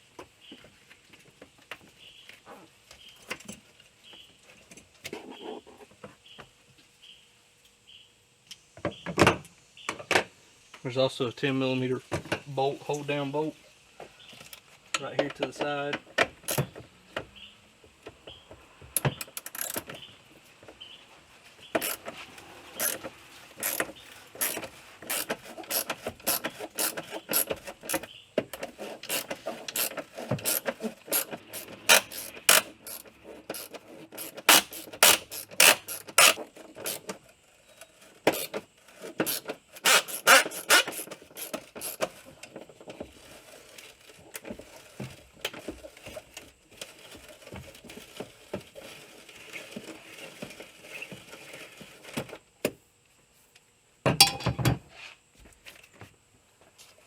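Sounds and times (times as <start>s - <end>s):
socket ratchet clicking: 16.4s - 16.7s, 19.2s - 19.9s, 21.8s - 22.0s, 22.8s - 23.0s, 23.6s - 28.0s, 29.0s - 37.0s, 39.2s - 42.1s.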